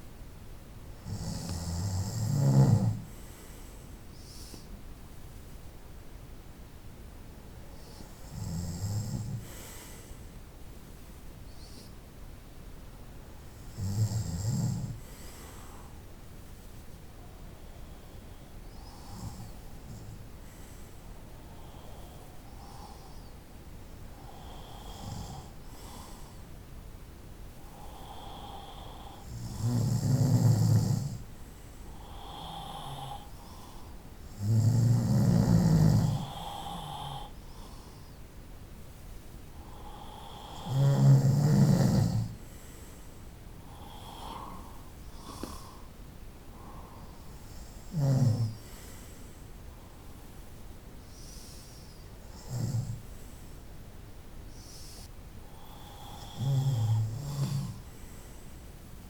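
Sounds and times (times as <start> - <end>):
soft breaths: 0.0 - 59.0
person snoring: 24.2 - 26.3, 27.8 - 31.2, 34.4 - 37.8, 39.7 - 42.4, 43.7 - 45.9, 46.6 - 48.6, 54.6 - 57.9.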